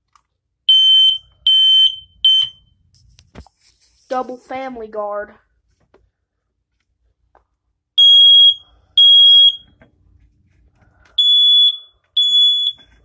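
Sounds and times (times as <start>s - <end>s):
smoke alarm beeping: 0.7s - 2.8s, 8.0s - 9.7s, 11.2s - 13.0s.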